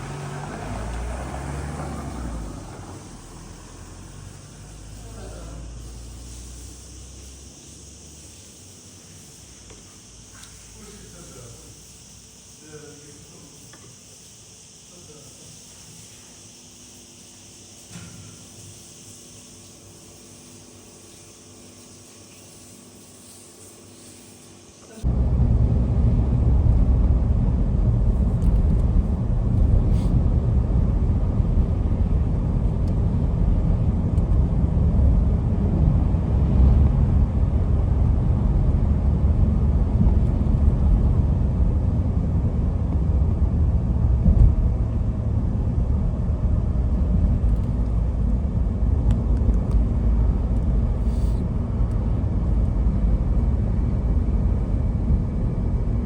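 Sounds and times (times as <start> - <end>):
steady low rumble: 25.0 - 56.0.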